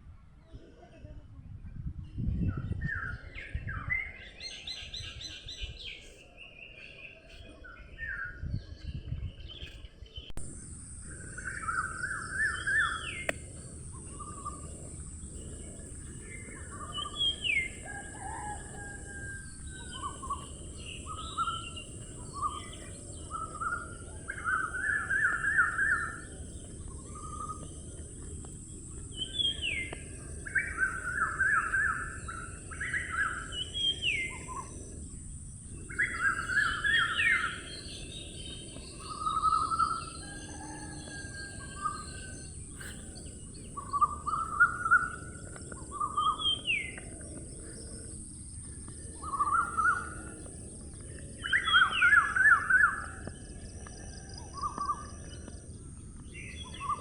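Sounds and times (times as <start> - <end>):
songbirds singing and calling: 0.2 - 57.0
high-pitched hiss: 10.4 - 40.2
low steady rumble: 10.4 - 51.4.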